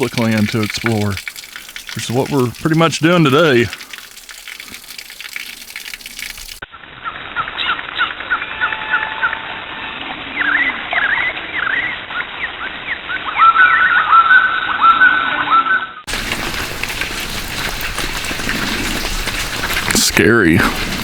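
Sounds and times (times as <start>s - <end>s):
birds chirping: 0.0s - 6.6s, 16.1s - 21.0s.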